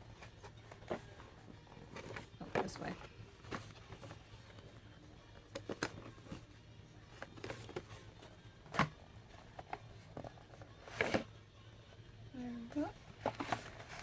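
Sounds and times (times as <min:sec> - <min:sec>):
cardboard box being handled: 0:13.1 - 0:14.0.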